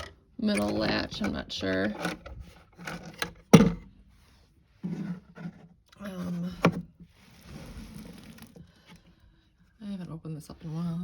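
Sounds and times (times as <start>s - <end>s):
rustling: 7.0s - 9.2s.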